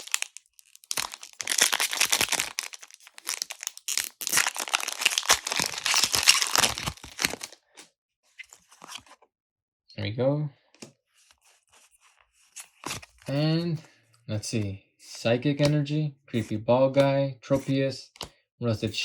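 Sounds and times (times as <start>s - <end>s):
foil wrapper crinkling and tearing: 0.0s - 7.8s.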